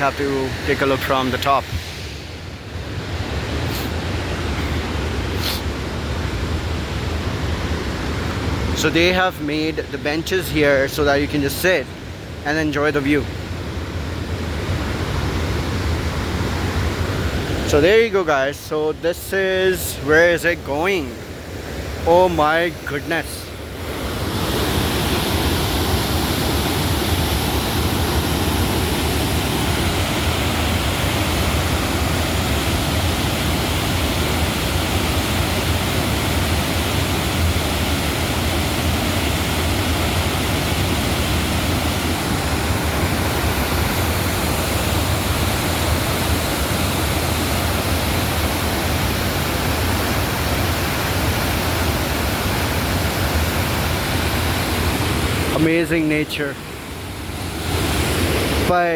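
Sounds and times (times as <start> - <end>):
waterfall rushing: 13.9 - 58.9.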